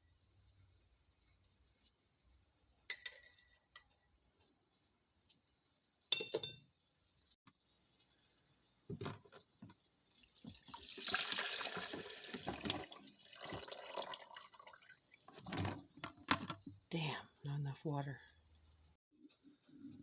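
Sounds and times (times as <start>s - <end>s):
water running into a container: 7.6s - 16.7s.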